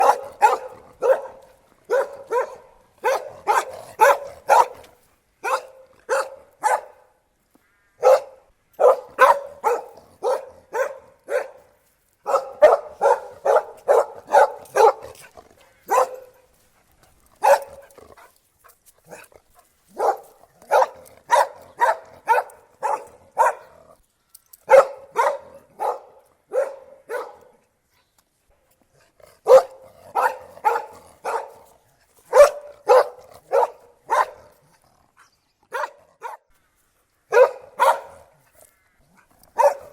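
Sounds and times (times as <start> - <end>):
dog barking: 0.0 - 7.1, 8.0 - 15.3, 15.9 - 16.5, 17.4 - 18.0, 19.9 - 23.7, 24.7 - 27.6, 29.4 - 31.7, 32.3 - 34.6, 35.7 - 36.4, 37.3 - 38.3, 39.5 - 39.9.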